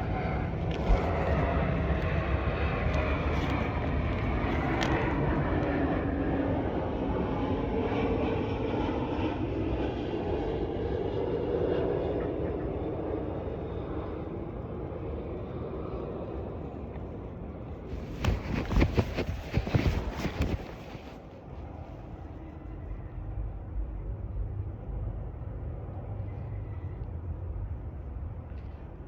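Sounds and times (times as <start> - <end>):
airplane passing overhead: 0.0 - 29.0
wind gusts on microphone: 17.8 - 21.9.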